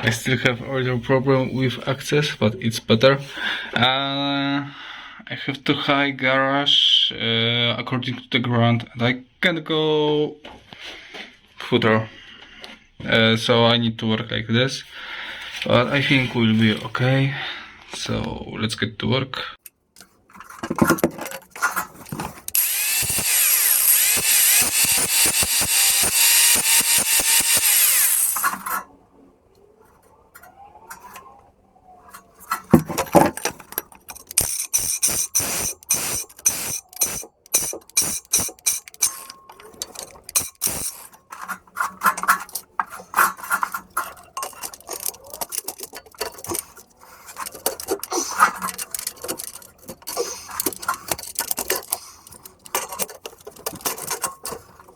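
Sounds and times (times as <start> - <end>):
metallic clicks and scrapes: 19.6 - 28.9, 32.1 - 54.9
power tool grinding metal: 22.4 - 28.8, 34.2 - 41.2.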